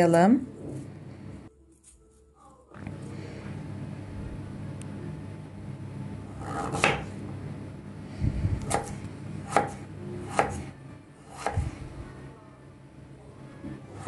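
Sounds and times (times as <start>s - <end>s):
knife chopping on cutting board: 6.4s - 7.1s, 8.7s - 10.6s, 11.3s - 11.6s.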